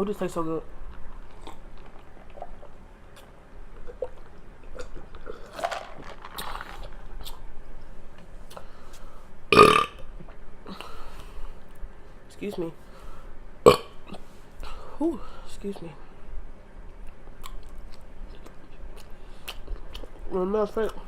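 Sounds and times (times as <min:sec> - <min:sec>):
wet mouth eating sounds: 0:00.9 - 0:07.4, 0:17.0 - 0:20.2
woman burping: 0:09.5 - 0:10.0.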